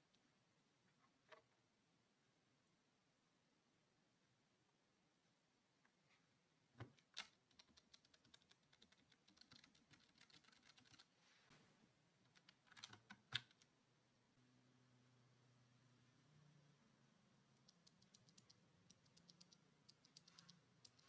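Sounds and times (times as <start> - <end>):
mechanical keyboard typing: 7.0 - 11.1, 12.3 - 13.7, 17.6 - 21.0.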